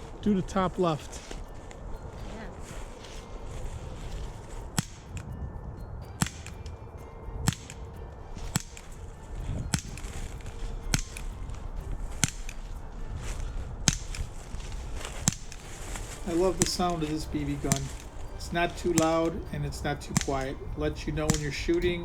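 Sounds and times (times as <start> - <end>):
air pistol shots: 6.2 - 6.6, 7.5 - 7.8, 8.4 - 9.0, 10.9 - 11.3, 12.2 - 12.6, 13.9 - 14.3, 16.2 - 22.0.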